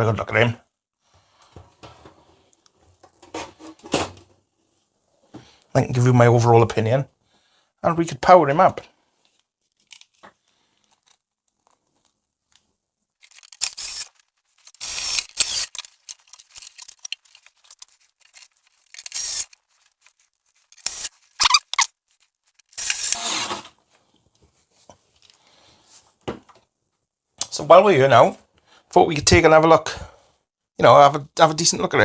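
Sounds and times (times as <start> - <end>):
short scraping and rubbing: 13.2 - 23.8
sharp clicks: 18.9 - 19.6, 20.8 - 21.9.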